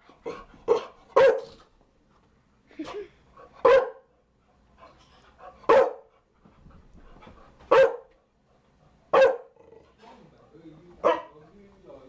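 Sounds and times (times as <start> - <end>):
dog barking: 0.7 - 1.6, 3.6 - 4.1, 5.7 - 6.1, 7.7 - 8.1, 9.1 - 9.6, 11.0 - 11.4.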